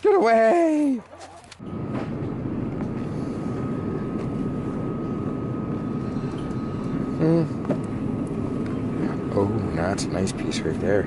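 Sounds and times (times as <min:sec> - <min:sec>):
thin steady whine: 0:00.0 - 0:11.0
low engine drone: 0:00.7 - 0:11.0.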